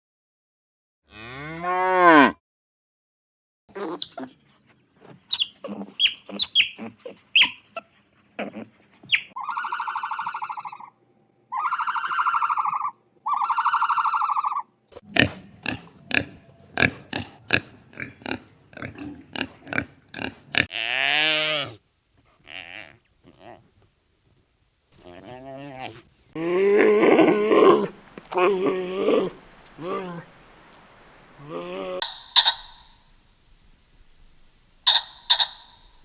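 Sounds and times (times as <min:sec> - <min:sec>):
long buzzy high animal calls: 0:09.4 - 0:21.8, 0:26.4 - 0:33.0, 0:34.8 - 0:36.0
animal grunting: 0:15.0 - 0:20.7, 0:26.4 - 0:30.4, 0:31.4 - 0:32.1.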